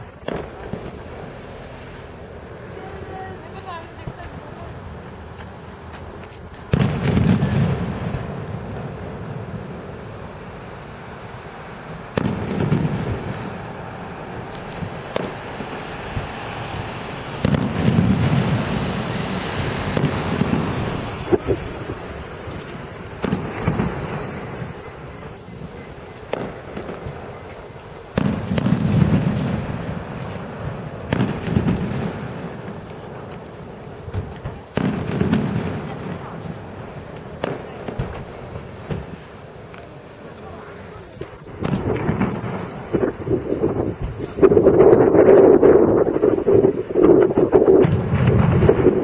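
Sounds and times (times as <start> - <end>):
low rolling rumble: 6.5 - 49.0
firework shells bursting: 10.8 - 39.9, 41.2 - 46.4.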